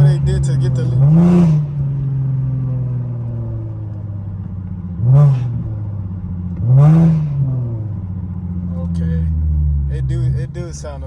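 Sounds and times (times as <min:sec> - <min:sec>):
car engine revving with loud exhaust: 0:00.0 - 0:11.0.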